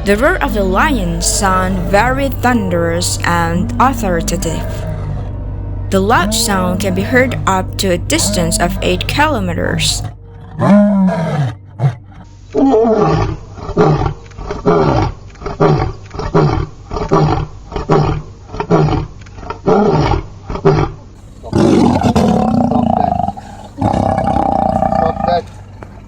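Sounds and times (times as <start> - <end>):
lion roaring: 4.4 - 5.4, 10.0 - 25.8.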